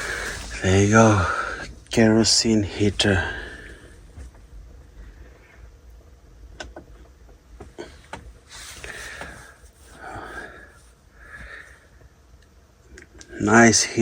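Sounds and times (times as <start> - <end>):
soft rustling: 7.6 - 11.7.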